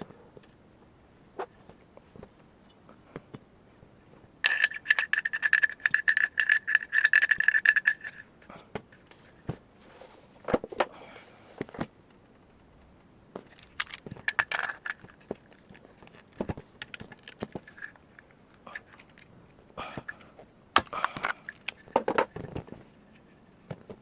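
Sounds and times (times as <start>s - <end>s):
metal parts clicking and rattling: 4.4s - 9.1s, 13.4s - 19.3s, 20.9s - 23.3s.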